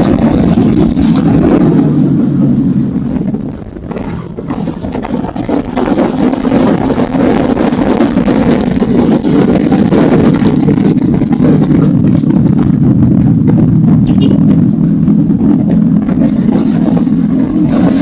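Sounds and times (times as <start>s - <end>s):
motorcycle engine running: 0.0s - 18.0s
wind noise on microphone: 0.0s - 18.0s.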